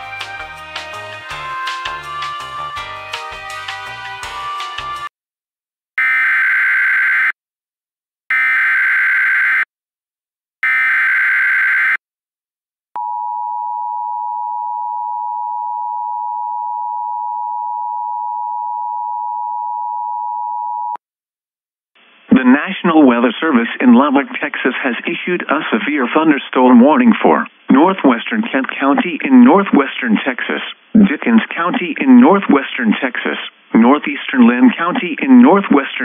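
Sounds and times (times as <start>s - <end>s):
two-tone alarm: 8.3s - 9.7s, 10.6s - 12.0s.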